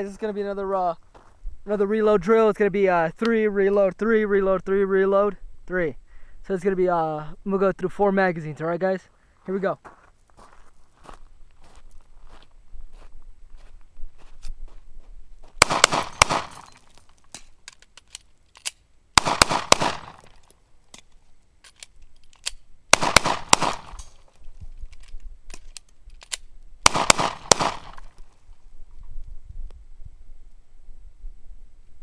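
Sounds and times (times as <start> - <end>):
pistol shots: 15.6 - 16.8, 19.2 - 20.3, 22.9 - 24.1, 26.8 - 28.2.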